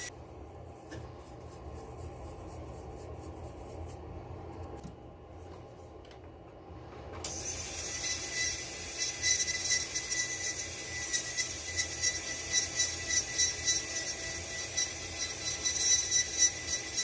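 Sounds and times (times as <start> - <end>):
hand tool scraping metal: 7.3 - 17.0.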